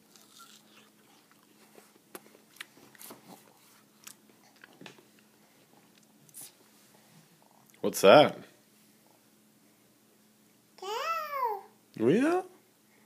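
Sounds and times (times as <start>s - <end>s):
wet chewing of melon: 0.0s - 4.8s.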